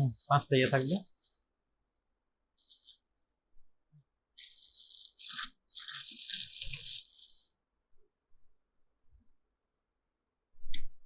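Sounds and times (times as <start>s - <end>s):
packaging rustling and crinkling: 0.0s - 1.4s, 4.4s - 7.4s.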